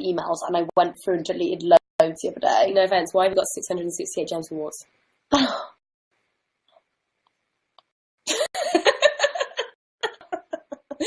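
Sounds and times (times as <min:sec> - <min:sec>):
woman laughing: 0:08.3 - 0:11.0.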